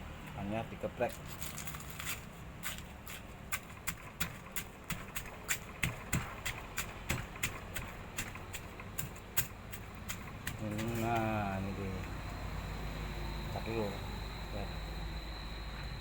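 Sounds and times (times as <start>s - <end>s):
pestle pounding in mortar: 2.6s - 11.7s.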